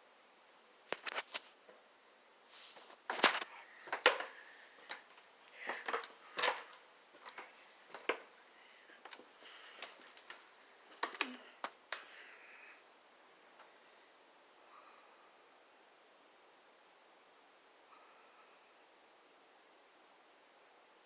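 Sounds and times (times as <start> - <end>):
soft rustling: 0.4 - 1.8, 2.5 - 14.1.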